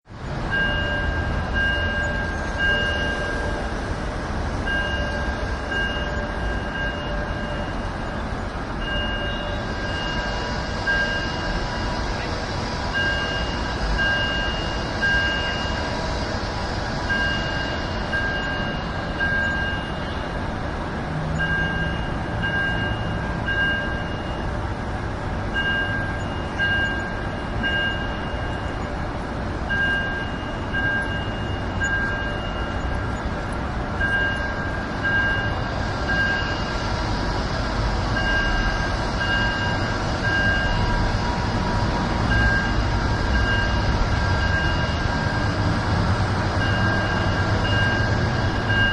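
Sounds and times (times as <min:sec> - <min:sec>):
city traffic rumble: 0:00.0 - 0:48.9
electronic alarm chime: 0:00.5 - 0:03.5, 0:04.7 - 0:08.2, 0:08.8 - 0:11.9, 0:13.0 - 0:15.9, 0:17.1 - 0:20.2, 0:21.4 - 0:24.5, 0:25.5 - 0:28.8, 0:29.7 - 0:33.0, 0:34.0 - 0:36.7, 0:38.2 - 0:41.0, 0:42.3 - 0:45.6, 0:46.6 - 0:48.9.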